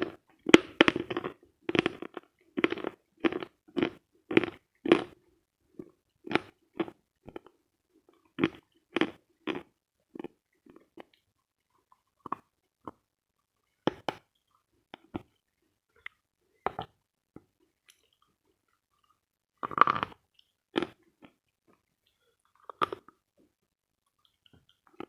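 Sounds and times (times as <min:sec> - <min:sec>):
chalk crunching while chewed: 0:00.0 - 0:05.2, 0:05.8 - 0:13.0, 0:18.9 - 0:23.2.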